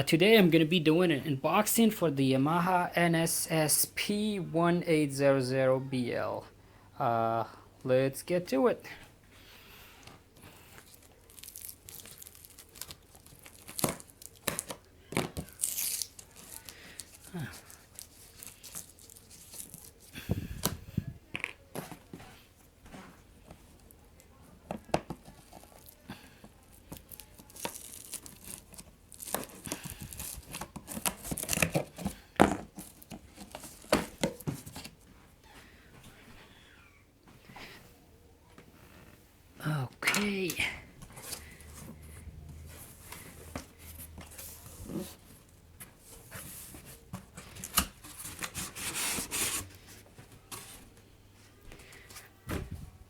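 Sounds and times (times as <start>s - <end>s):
packaging tearing and crinkling: 10.8s - 20.1s, 26.9s - 32.1s.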